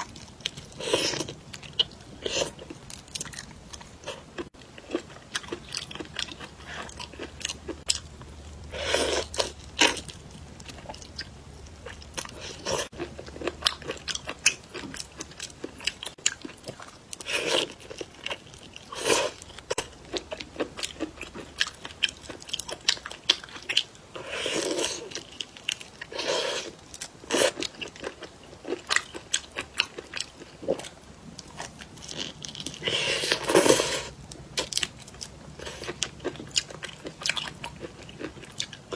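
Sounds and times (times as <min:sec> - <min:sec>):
person chewing with wet clicks: 0:00.0 - 0:23.9, 0:26.9 - 0:32.9, 0:33.6 - 0:38.9.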